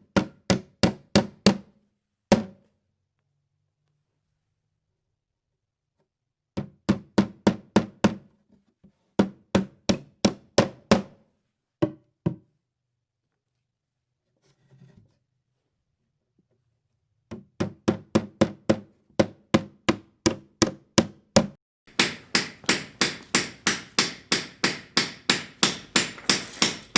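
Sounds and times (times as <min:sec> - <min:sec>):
hammer blows: 0:21.9 - 0:26.9
ringing hammer strikes: 0:21.9 - 0:26.9.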